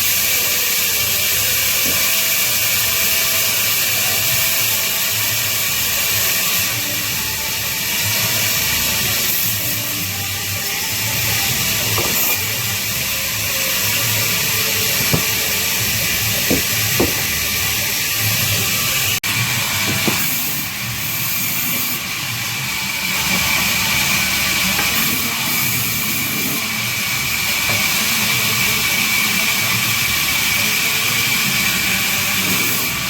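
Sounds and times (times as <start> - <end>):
band saw cutting wood: 0.0 - 33.0
sharp knocks: 16.5 - 17.3.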